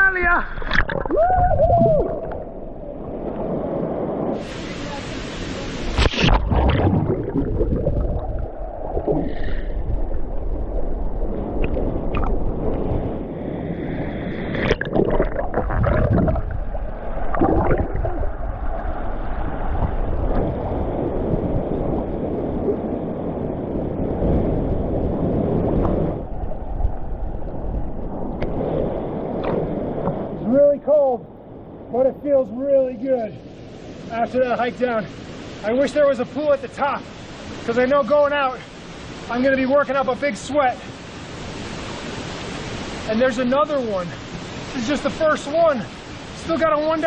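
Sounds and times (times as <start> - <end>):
water gurgling and sloshing: 0.2 - 32.3
rush of falling water: 4.3 - 12.8, 32.5 - 47.0.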